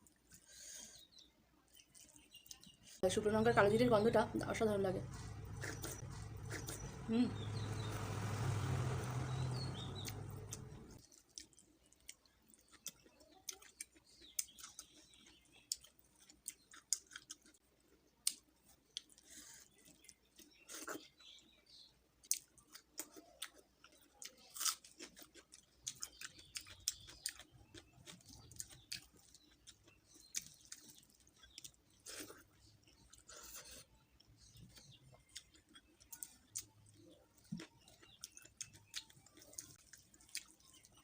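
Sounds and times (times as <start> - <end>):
chewing and smacking mouth sounds: 1.7 - 3.0, 5.0 - 7.1, 10.0 - 41.0.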